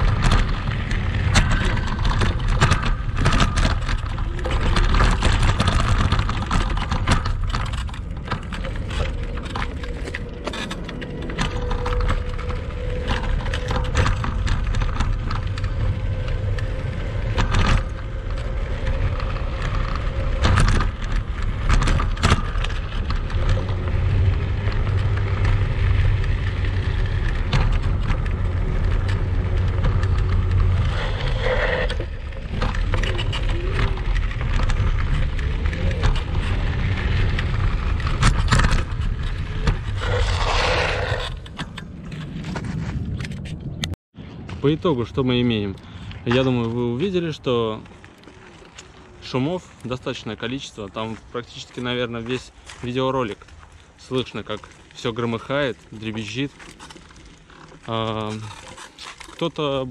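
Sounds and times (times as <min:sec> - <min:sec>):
parts rattling and clattering: 0:00.0 - 0:43.8, 0:46.3 - 0:59.9
scooter low rumble: 0:00.0 - 0:59.9.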